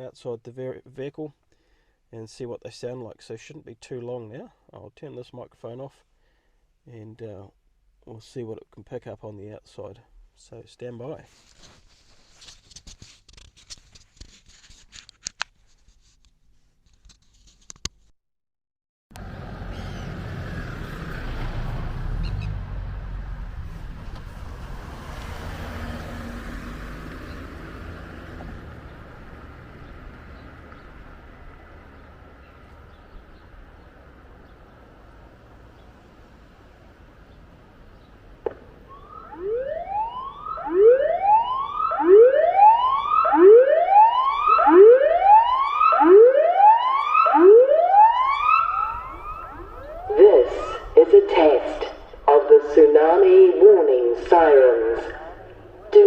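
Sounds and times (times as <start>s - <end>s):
outdoor background noise: 19.1s - 56.0s
warning siren rising whoop: 38.9s - 51.0s.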